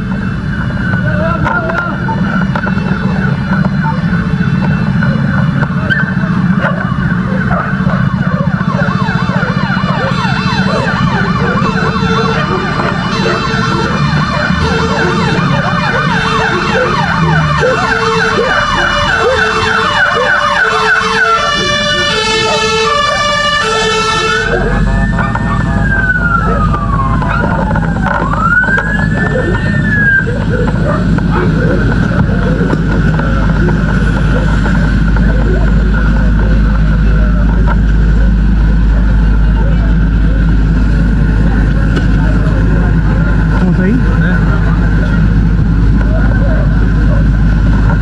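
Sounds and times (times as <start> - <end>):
fire engine sirens: 0.0 - 48.0
low engine rumble: 0.0 - 48.0.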